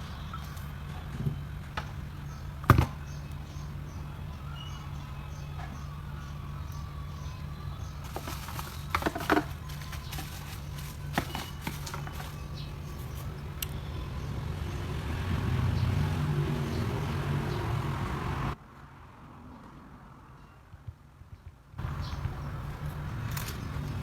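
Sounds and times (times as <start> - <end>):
steady low hum: 0.0 - 14.5
small tools clicking and tapping: 8.0 - 13.8.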